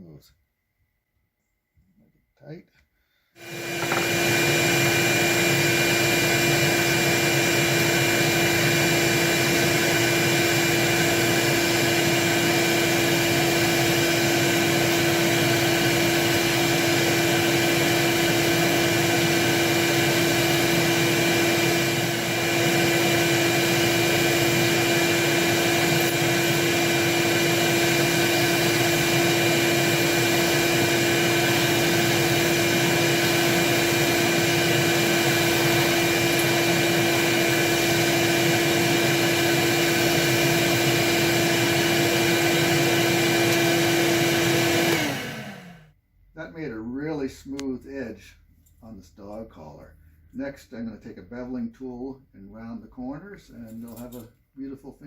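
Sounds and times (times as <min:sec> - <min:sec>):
sanding drum motor running: 0:03.4 - 0:45.8
shop vac running: 0:03.4 - 0:46.0
leather edge being sanded: 0:40.2 - 0:40.4.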